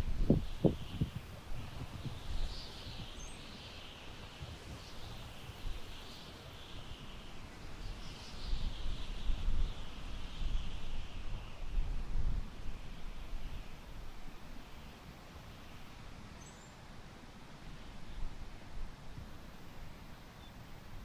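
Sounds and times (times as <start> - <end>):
wind rumble on microphone: 0.0 - 14.6
wind rustling tall grass: 0.0 - 21.0.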